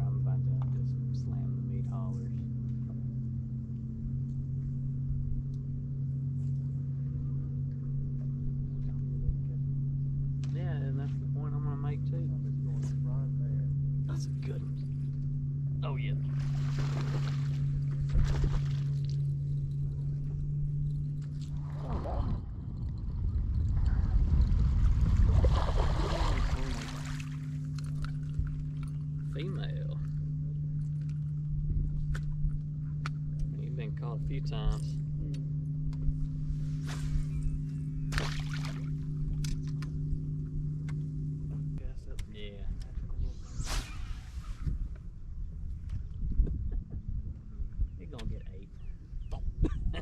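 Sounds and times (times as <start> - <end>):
boat motor humming: 0.0 - 50.0
water splashing against boat: 16.2 - 20.2, 21.2 - 29.8, 38.1 - 39.8.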